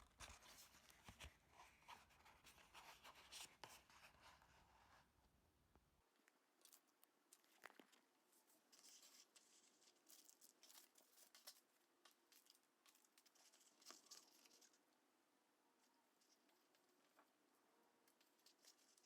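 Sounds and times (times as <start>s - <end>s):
hands rustling craft materials: 6.6s - 14.9s, 18.0s - 19.0s.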